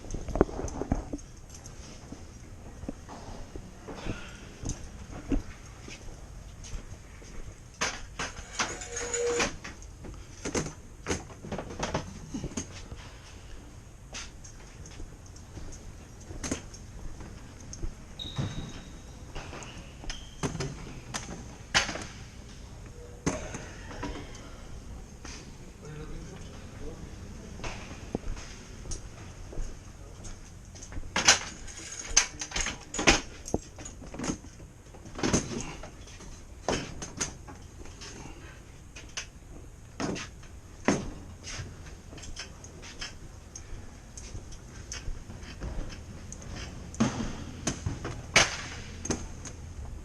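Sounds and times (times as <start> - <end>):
knocks and clanks on metal: 7.8 - 9.7
brief high squeak: 18.2 - 20.4.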